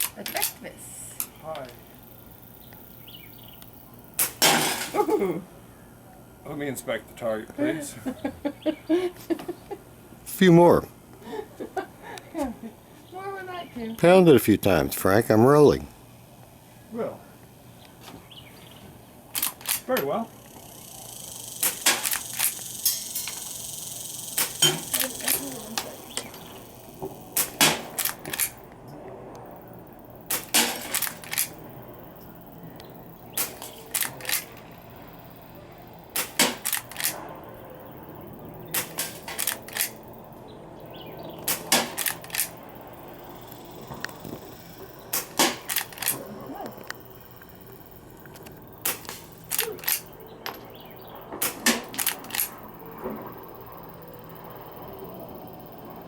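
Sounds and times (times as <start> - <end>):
rifle shots sharp clicks: 4.2 - 4.8, 19.3 - 19.9, 21.6 - 23.5, 24.2 - 26.6, 27.3 - 28.6, 30.3 - 31.6, 33.3 - 34.7, 36.1 - 37.3, 38.7 - 40.1, 41.4 - 42.6, 45.1 - 46.2, 48.4 - 50.6, 51.3 - 52.6
bullet hitting target: 4.2 - 4.9, 21.6 - 22.5, 24.4 - 25.1, 27.4 - 28.5, 36.2 - 37.2, 41.4 - 42.5, 45.1 - 46.2.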